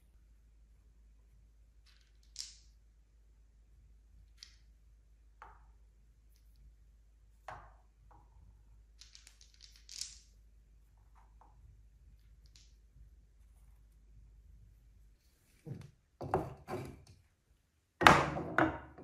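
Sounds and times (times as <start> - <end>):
marbles clicking on wooden run: 8.1 - 10.3.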